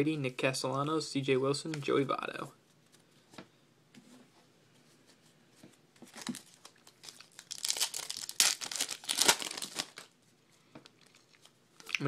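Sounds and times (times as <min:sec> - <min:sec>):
foil wrapper crinkling and tearing: 0:06.1 - 0:10.2.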